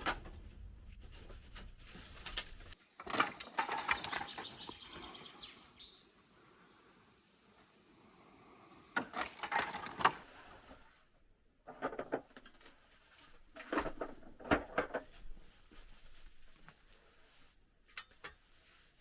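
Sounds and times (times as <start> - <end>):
hay rustling: 14.9 - 19.0.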